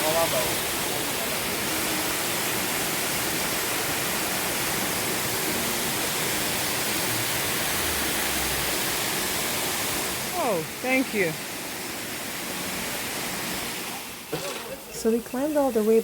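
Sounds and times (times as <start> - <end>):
waterfall roaring: 0.0 - 15.8.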